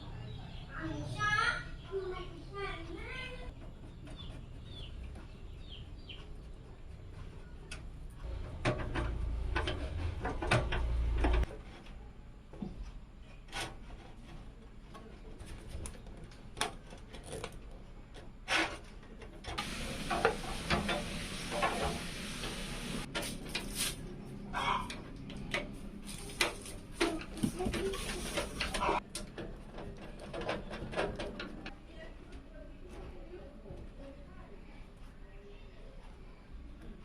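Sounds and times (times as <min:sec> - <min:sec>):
steady hiss: 0:19.6 - 0:24.0.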